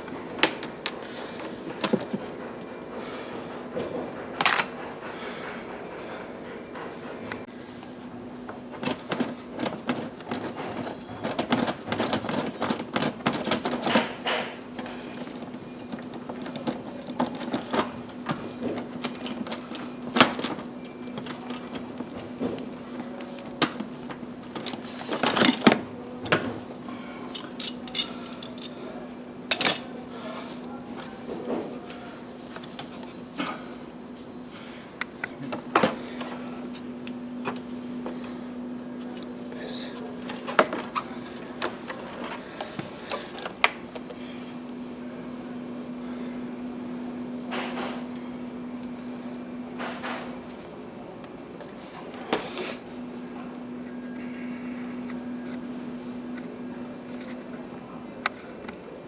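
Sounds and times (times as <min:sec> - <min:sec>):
hand tools clicking and clattering: 0:08.8 - 0:22.7, 0:23.4 - 0:26.6, 0:27.3 - 0:28.8, 0:29.5 - 0:30.0.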